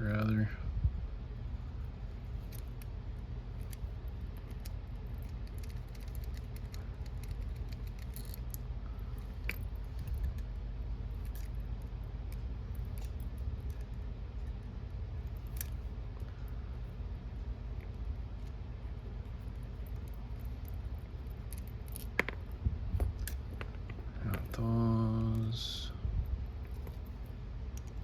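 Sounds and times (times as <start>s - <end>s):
low hum: 0.0s - 28.0s
small metallic clicks and clinks: 4.4s - 10.5s, 11.2s - 14.6s, 19.4s - 25.5s.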